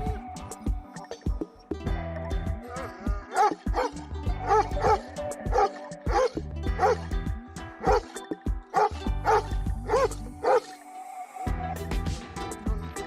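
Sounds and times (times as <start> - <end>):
background music: 0.0 - 13.0
dog barking: 2.8 - 7.1, 7.8 - 10.8.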